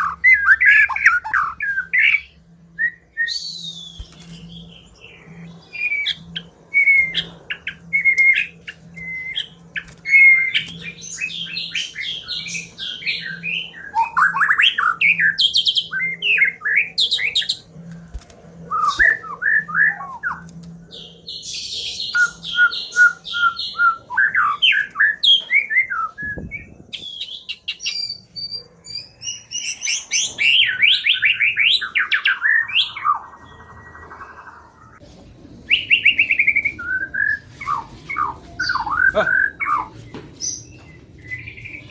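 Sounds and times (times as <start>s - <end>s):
bird singing whistled phrases: 35.7s - 41.9s.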